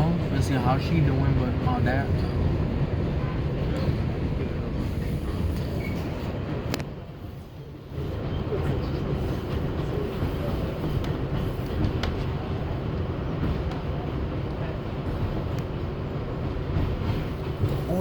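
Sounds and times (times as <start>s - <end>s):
train wheels rumbling on rail: 0.0s - 18.0s.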